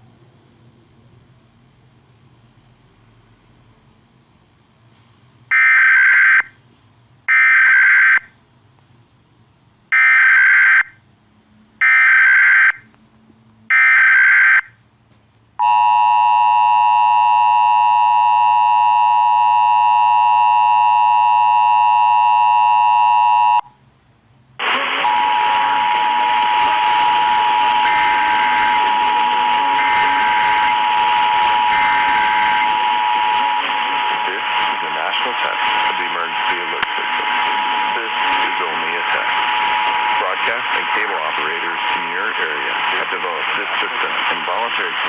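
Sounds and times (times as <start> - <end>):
loud static hiss: 0.0 - 45.0
screeching digital header bursts: 5.5 - 6.5, 7.3 - 8.3, 10.0 - 10.9, 11.8 - 12.8, 13.7 - 14.7, 25.1 - 34.6
two-tone attention signal: 5.5 - 6.5, 7.3 - 8.3, 10.0 - 10.9, 11.8 - 12.8, 13.7 - 14.7, 15.6 - 23.7, 25.0 - 34.0
steady tone: 15.6 - 23.8, 25.0 - 42.8.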